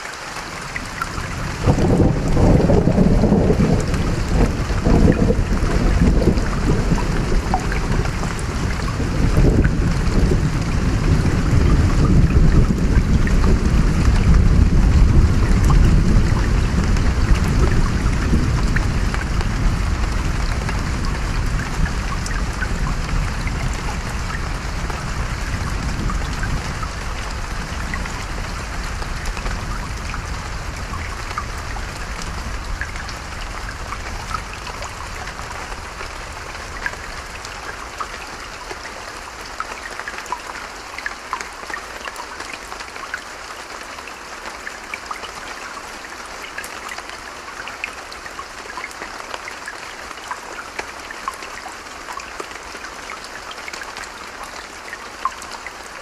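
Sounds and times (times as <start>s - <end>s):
running water: 0.0s - 56.0s
steady rain: 0.0s - 56.0s
rolling thunder: 1.4s - 35.9s.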